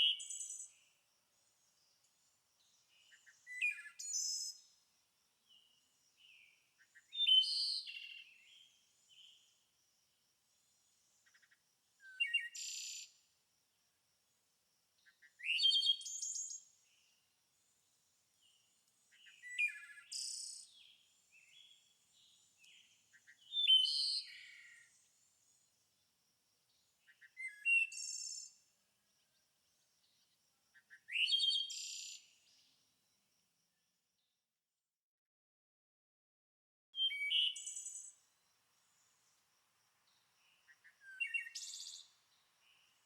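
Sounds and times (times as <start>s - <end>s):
songbird chirping and whistling: 3.1s - 4.6s, 7.0s - 8.1s, 22.7s - 24.6s, 31.1s - 32.2s, 37.0s - 38.1s, 40.9s - 42.1s.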